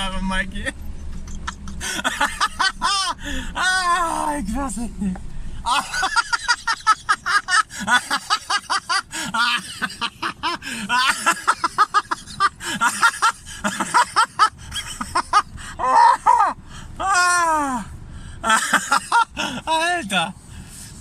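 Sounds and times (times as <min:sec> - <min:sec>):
people laughing hard: 0:01.1 - 0:03.2, 0:05.7 - 0:16.5, 0:18.4 - 0:19.4.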